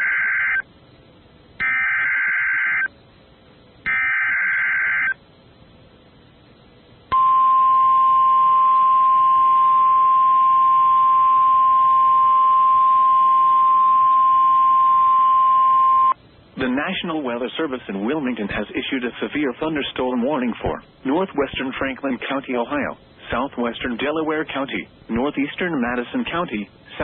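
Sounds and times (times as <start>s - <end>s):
high warning alarm tone: 0.0s - 0.6s, 1.6s - 2.9s, 3.9s - 5.2s, 7.1s - 16.2s.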